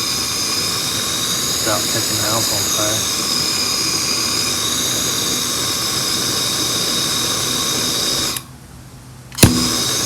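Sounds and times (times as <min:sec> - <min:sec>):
heat tool blowing hiss: 0:00.0 - 0:08.5, 0:09.4 - 0:10.0
sharp click: 0:09.3 - 0:10.0.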